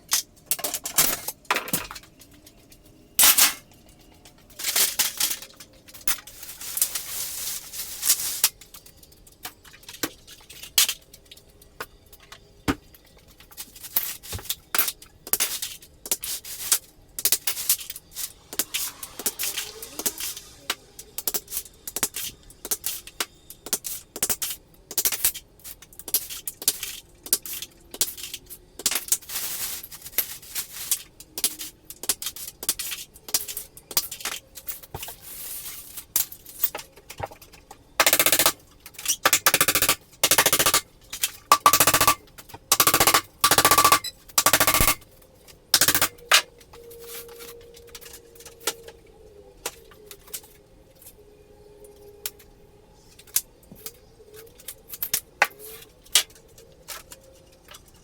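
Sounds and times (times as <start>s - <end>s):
hardware clanking and knocking: 0.5s - 2.2s.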